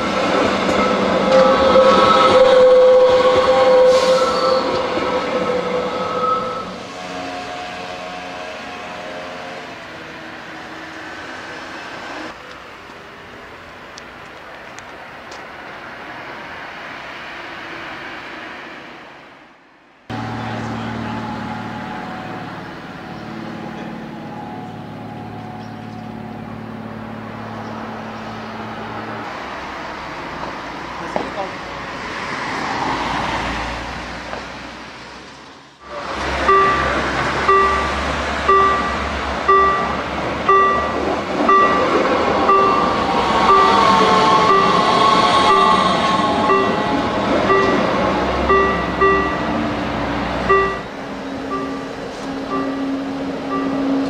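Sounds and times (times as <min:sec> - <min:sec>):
train rolling noise: 0:00.0 - 0:54.0
train wheels squealing: 0:00.7 - 0:08.8, 0:42.5 - 0:48.0.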